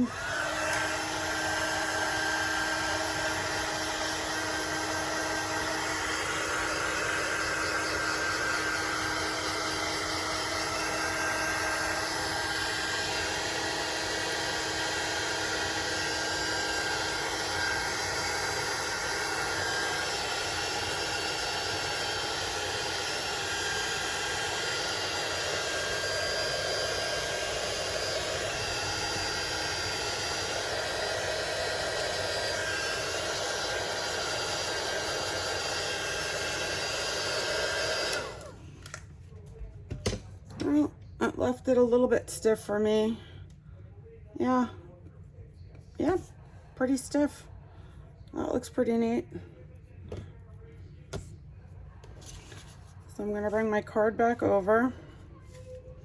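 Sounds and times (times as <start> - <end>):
heat tool fan whining: 0.0 - 39.1.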